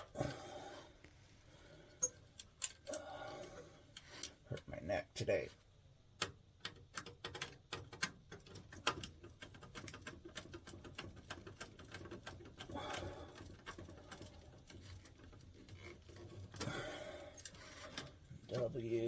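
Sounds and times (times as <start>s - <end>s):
clicks and taps on wiring terminals: 6.1s - 16.8s.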